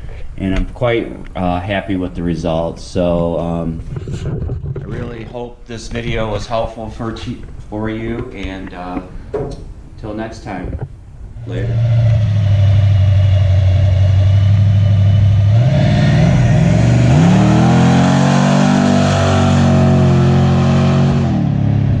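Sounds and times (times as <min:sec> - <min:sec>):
car engine idling and revving: 0:11.4 - 0:22.0.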